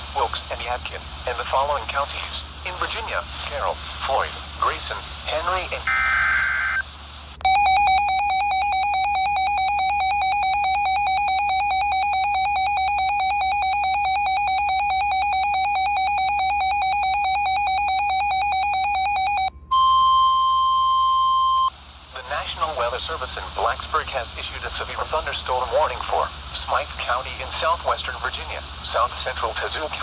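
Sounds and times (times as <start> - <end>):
buzzy pulsing electronic alarm: 7.4 - 21.7
steady warning alarm tone: 7.4 - 21.7.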